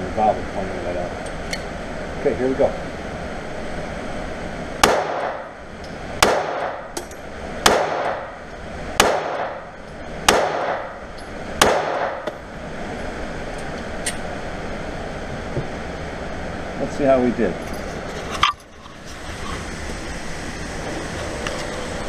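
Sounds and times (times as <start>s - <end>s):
pistol shots echoing indoors: 4.8s - 5.4s, 6.2s - 6.8s, 7.6s - 8.2s, 9.0s - 9.7s, 10.3s - 11.0s, 11.6s - 12.3s.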